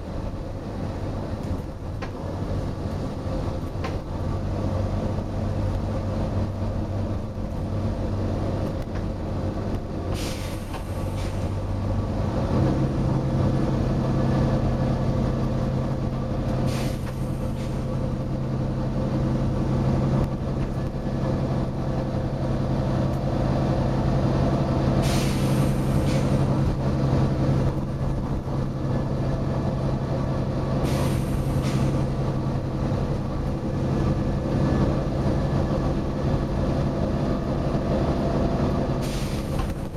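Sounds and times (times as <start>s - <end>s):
bus diesel engine running: 0.0s - 39.9s
air brake hisses: 10.1s - 11.8s, 16.6s - 18.0s, 25.0s - 26.6s, 30.8s - 32.2s, 39.0s - 39.9s.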